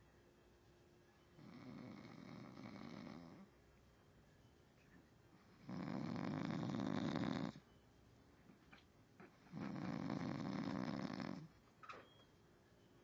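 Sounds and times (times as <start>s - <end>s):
person snoring: 5.6s - 7.6s, 9.5s - 11.5s.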